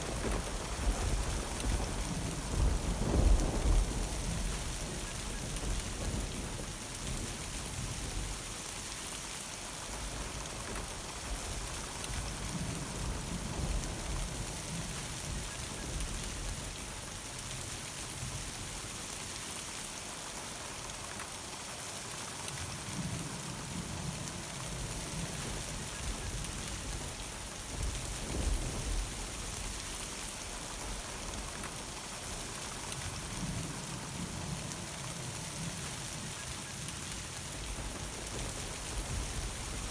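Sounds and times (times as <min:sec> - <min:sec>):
low thunder rumbles: 0:00.0 - 0:07.2, 0:37.6 - 0:39.9
heavy rain pattering: 0:00.0 - 0:39.9.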